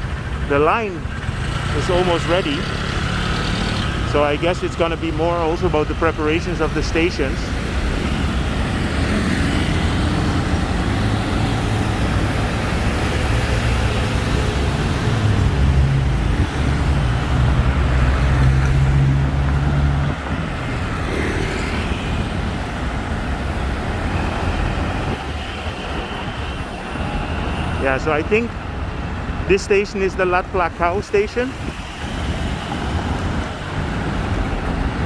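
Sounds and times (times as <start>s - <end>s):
heavy vehicle engine running: 0.0s - 21.0s
road traffic: 0.0s - 35.0s.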